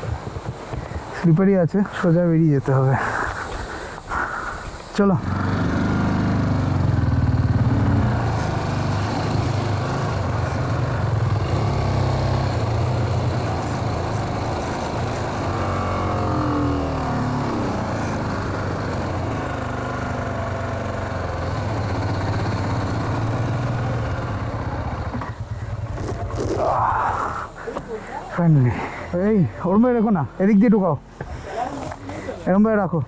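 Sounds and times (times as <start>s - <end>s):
motorcycle engine running: 5.1s - 26.9s.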